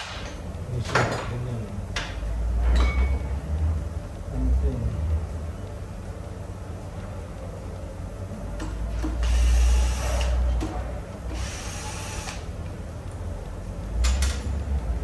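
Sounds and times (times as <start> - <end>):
power tool running: 9.2 - 10.4, 11.3 - 12.4.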